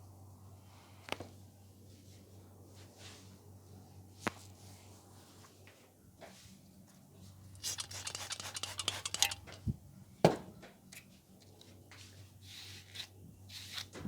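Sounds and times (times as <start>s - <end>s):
hands rubbing through hair: 7.6s - 9.4s.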